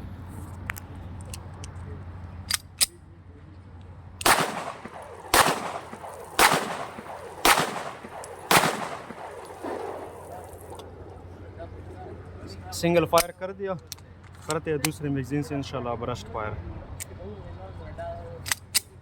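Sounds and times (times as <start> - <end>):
pistol shots with echo: 4.2 - 11.0.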